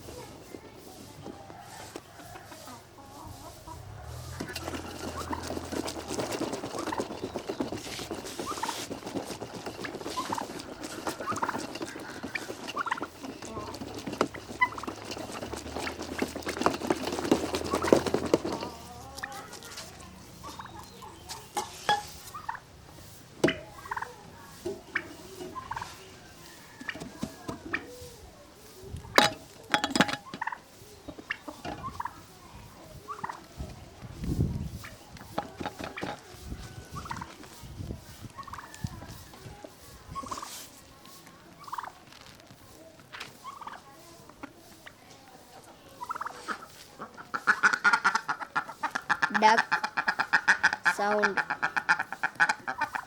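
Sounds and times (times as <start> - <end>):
ducks quacking: 46.0 - 53.0
fowl calling: 46.0 - 53.0.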